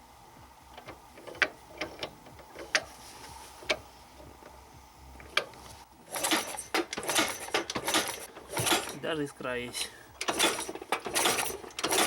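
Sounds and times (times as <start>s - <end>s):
engine turning over clatter: 5.2s - 12.0s.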